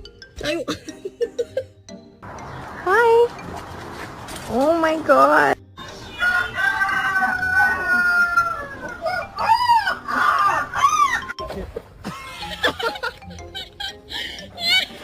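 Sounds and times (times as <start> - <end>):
animal crowing call: 5.8 - 11.4.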